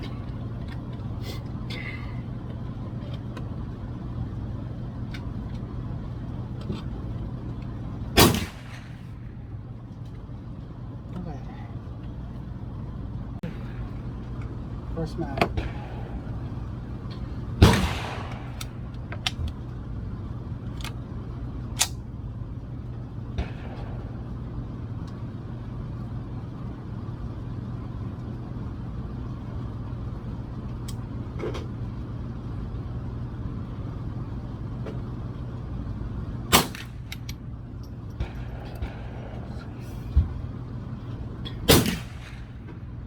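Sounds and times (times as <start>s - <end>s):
steady low hum: 0.0s - 43.0s
gunshots: 8.2s - 9.2s, 17.6s - 18.9s, 23.4s - 24.4s, 36.5s - 37.1s, 41.6s - 42.7s.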